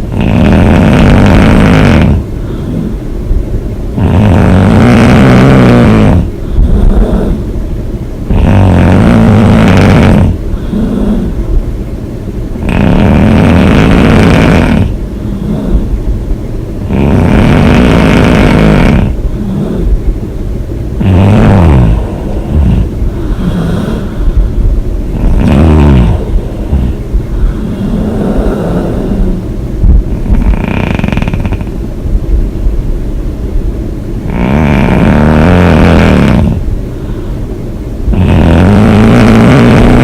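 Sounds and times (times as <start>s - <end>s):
woman snoring loudly: 0.0s - 3.0s, 4.0s - 7.5s, 8.3s - 11.4s, 12.6s - 15.9s, 16.8s - 20.0s, 21.0s - 24.3s, 25.1s - 29.4s, 30.1s - 31.8s, 34.2s - 36.7s, 38.1s - 40.0s
quiet breathing: 0.7s - 3.4s, 5.6s - 7.6s, 8.4s - 11.7s, 12.5s - 20.4s, 21.7s - 31.8s, 36.3s - 38.2s.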